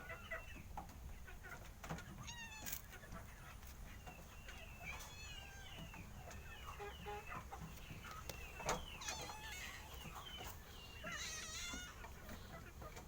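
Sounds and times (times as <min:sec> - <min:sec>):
chickens chirping: 0:00.0 - 0:13.0.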